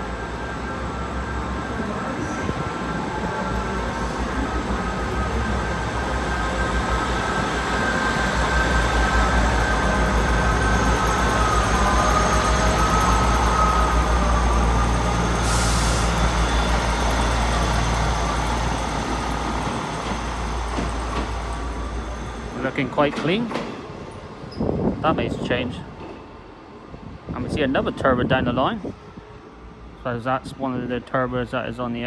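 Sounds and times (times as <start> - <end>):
diesel train engines running: 0.0 - 32.0
air hiss: 15.3 - 16.3.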